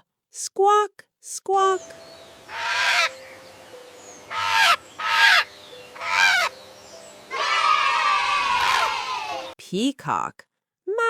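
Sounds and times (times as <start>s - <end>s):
macaw squawking: 2.4s - 9.5s.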